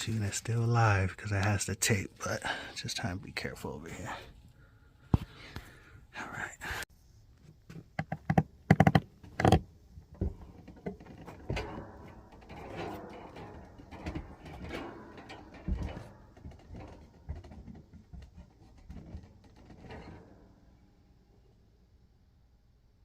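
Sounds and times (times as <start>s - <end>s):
sharp clicks and knocks: 7.4s - 20.5s
parts rattling and clattering: 7.5s - 21.3s.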